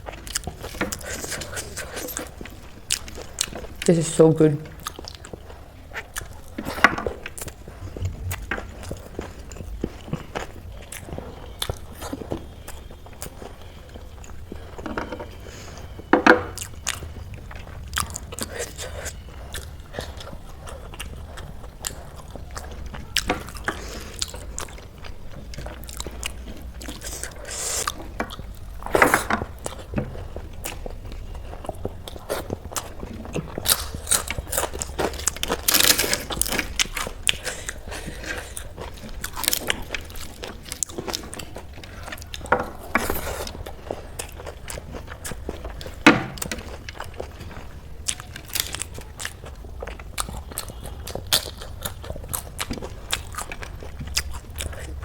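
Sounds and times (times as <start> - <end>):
person chewing and crunching: 0.0 - 55.0.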